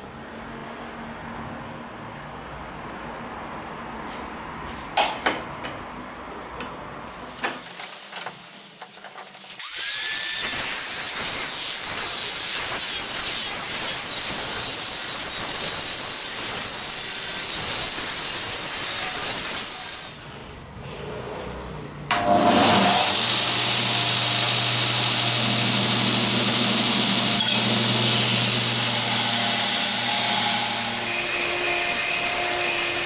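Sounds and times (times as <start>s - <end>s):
power tool motor whine: 9.6s - 20.4s, 22.2s - 33.0s.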